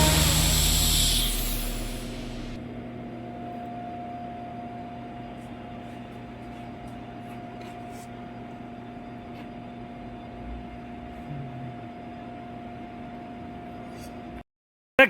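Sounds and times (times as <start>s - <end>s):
machine hum: 0.0s - 3.0s.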